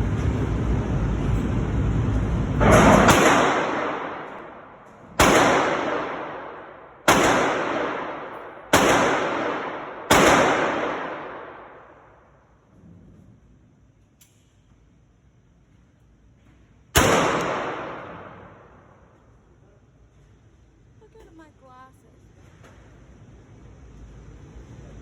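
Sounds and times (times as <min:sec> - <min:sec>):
loud echoing gunshots: 0:02.6 - 0:12.1, 0:17.0 - 0:19.0.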